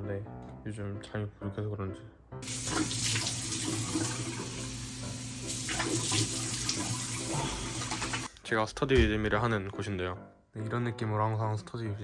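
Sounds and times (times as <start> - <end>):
tap water running into sink: 2.4 - 8.3.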